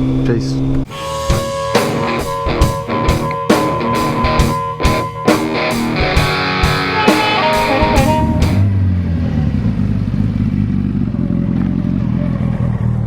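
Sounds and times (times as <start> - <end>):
rock music: 0.9 - 8.7
motorcycle engine running: 3.9 - 13.0.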